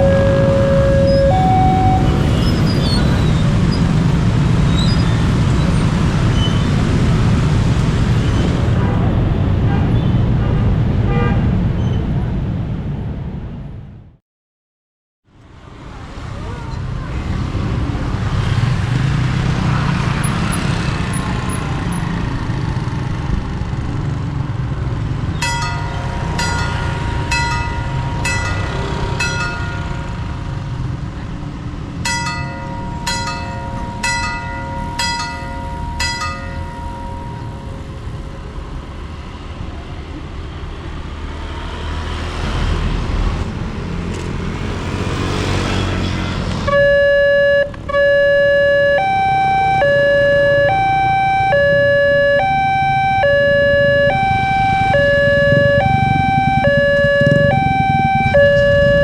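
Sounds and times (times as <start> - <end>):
crossing warning signal ringing: 0.0 - 2.5, 25.4 - 31.0, 31.9 - 38.3, 46.7 - 59.0
train rumbling past: 25.4 - 40.0.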